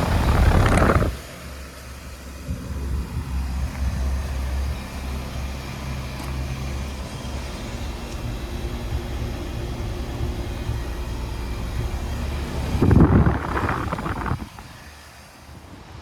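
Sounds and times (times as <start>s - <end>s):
rushing noise: 0.0s - 1.3s, 6.7s - 16.0s
heat pump humming: 0.0s - 16.0s.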